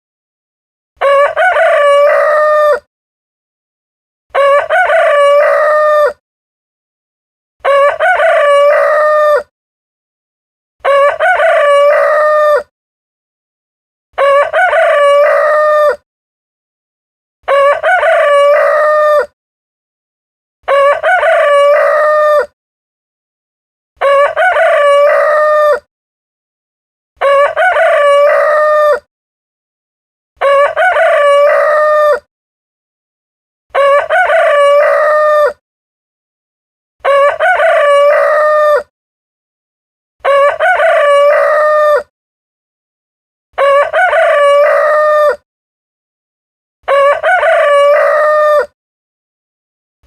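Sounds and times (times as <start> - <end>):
rooster crowing: 1.0 - 2.9, 4.4 - 6.2, 7.6 - 9.5, 10.8 - 12.7, 14.2 - 16.0, 17.5 - 19.3, 20.7 - 22.5, 24.0 - 25.9, 27.2 - 29.1, 30.4 - 32.3, 33.8 - 35.6, 37.0 - 38.9, 40.2 - 42.1, 43.6 - 45.4, 46.9 - 48.8.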